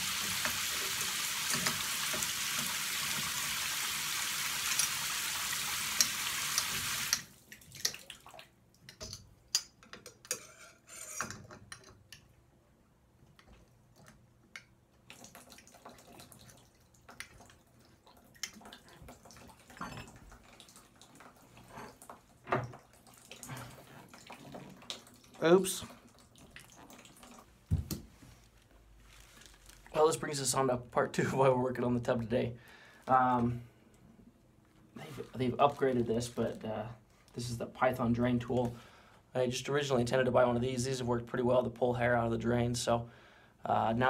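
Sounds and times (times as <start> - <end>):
water running from faucet: 0.0 - 8.0
water drips: 0.0 - 9.7, 13.9 - 28.0.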